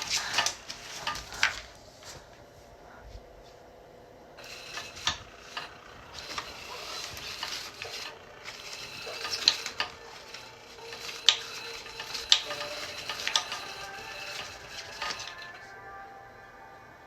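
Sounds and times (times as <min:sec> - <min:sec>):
small toy motor scraping: 0:00.0 - 0:01.7, 0:04.4 - 0:15.6.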